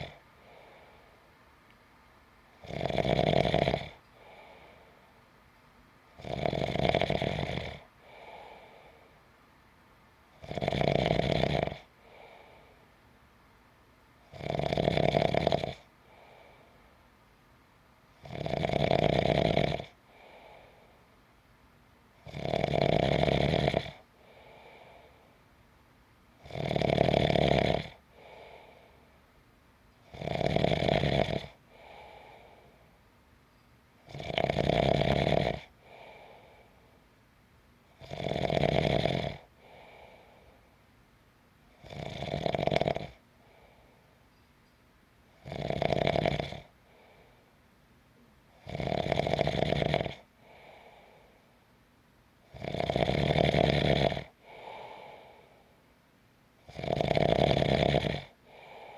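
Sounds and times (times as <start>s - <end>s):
person snoring: 0.0s - 1.0s, 2.6s - 4.7s, 6.2s - 8.9s, 10.4s - 12.5s, 14.3s - 16.6s, 18.2s - 20.7s, 22.3s - 25.2s, 26.4s - 28.9s, 30.1s - 32.7s, 34.1s - 36.6s, 38.0s - 40.5s, 41.8s - 43.2s, 45.4s - 46.7s, 48.6s - 51.2s, 52.5s - 55.5s, 56.7s - 58.9s
faint breath: 0.0s - 1.4s, 4.0s - 5.4s, 7.8s - 9.5s, 11.8s - 13.2s, 15.8s - 17.3s, 20.0s - 21.3s, 24.1s - 25.6s, 28.1s - 29.4s, 31.6s - 33.8s, 35.7s - 37.2s, 39.4s - 40.9s, 43.2s - 44.9s, 46.7s - 47.7s, 50.3s - 51.8s, 54.3s - 56.0s, 58.3s - 58.9s.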